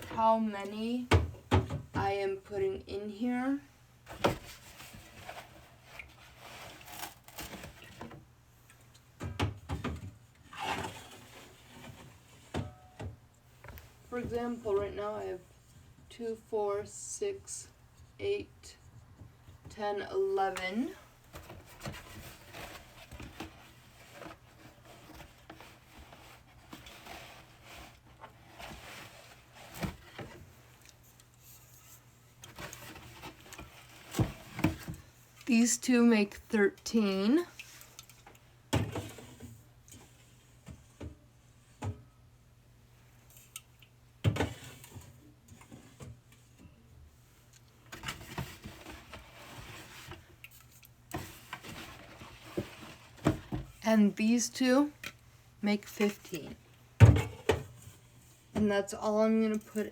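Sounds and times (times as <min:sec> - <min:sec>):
cans scraping on fridge shelf: 0:10.4 - 0:12.8.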